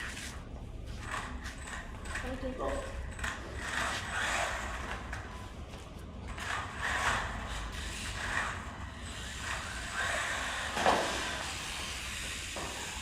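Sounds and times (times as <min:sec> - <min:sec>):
toy car motor whirring: 0:01.0 - 0:05.2, 0:06.3 - 0:13.0.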